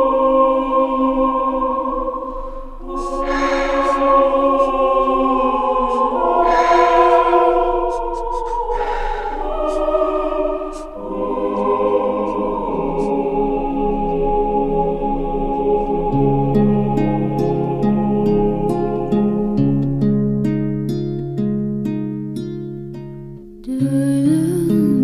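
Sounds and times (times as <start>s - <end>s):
choir singing sustained chords: 0.0s - 19.8s
breathy noise: 2.2s - 13.2s.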